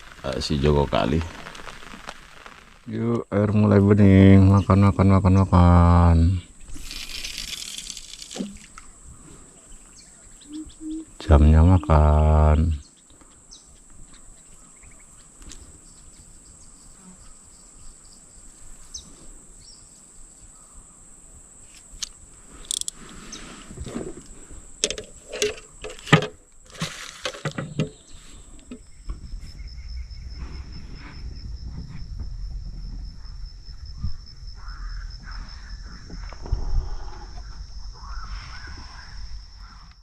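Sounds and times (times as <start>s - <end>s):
pulsing insect trill: 0.0s - 12.9s, 27.9s - 40.0s
high-pitched insect drone: 10.4s - 12.8s, 28.9s - 40.0s
sharp clicks and knocks: 24.8s - 28.0s
low rumble: 28.9s - 39.8s.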